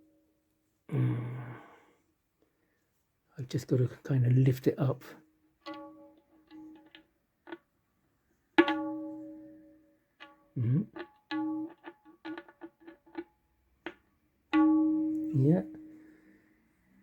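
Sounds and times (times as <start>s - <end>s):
tabla strokes ringing: 5.6s - 7.1s, 8.6s - 13.3s, 13.9s - 16.1s.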